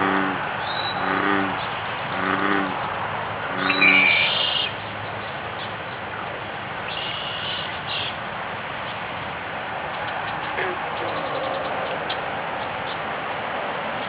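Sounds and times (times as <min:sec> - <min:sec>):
bullfrog calling: 0:00.0 - 0:02.8, 0:03.5 - 0:04.7, 0:06.9 - 0:08.1, 0:10.4 - 0:11.7
bird chirping: 0:00.6 - 0:03.0, 0:03.6 - 0:06.0, 0:06.9 - 0:08.2, 0:10.0 - 0:13.0.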